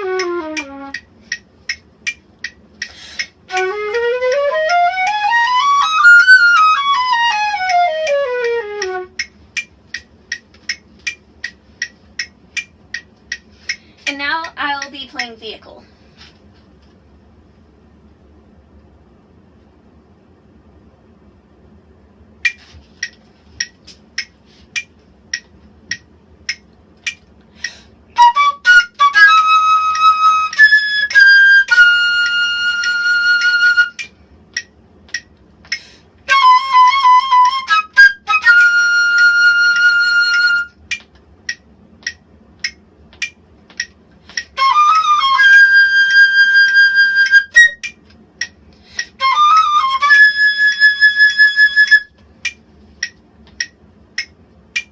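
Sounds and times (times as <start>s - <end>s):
flute-like wind instrument: 0.0s - 1.0s, 3.5s - 9.3s, 28.2s - 34.1s, 36.3s - 40.8s, 44.5s - 47.9s, 49.2s - 52.2s
metronome ticking: 0.0s - 15.5s, 22.4s - 54.9s.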